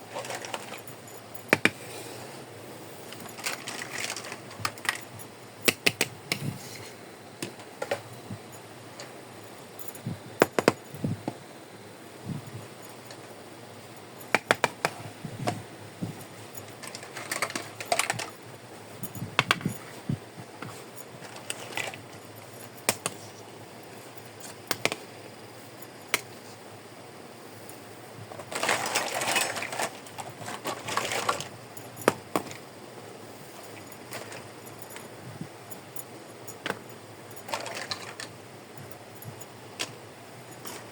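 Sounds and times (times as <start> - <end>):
rustling: 0.0 - 5.2, 27.6 - 32.7, 33.4 - 35.9
plastic toy pieces clicking: 16.8 - 18.4, 37.4 - 38.3.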